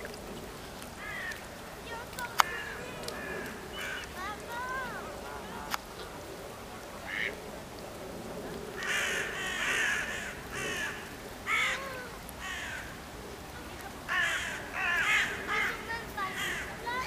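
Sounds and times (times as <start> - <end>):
harsh cawing bird calls: 1.0 - 1.5, 2.4 - 4.5, 8.8 - 13.0, 14.1 - 17.0.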